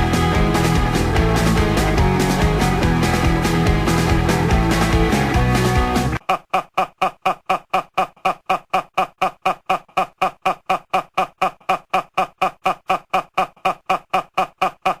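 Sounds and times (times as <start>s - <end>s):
looped voice stutter: 6.2s - 15.0s.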